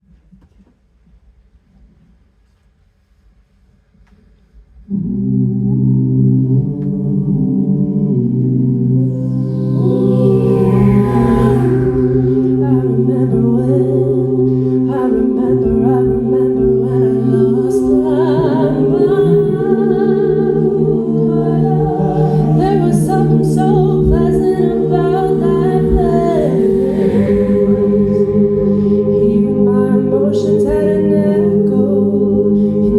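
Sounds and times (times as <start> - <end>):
voices humming and singing: 8.8 - 32.9.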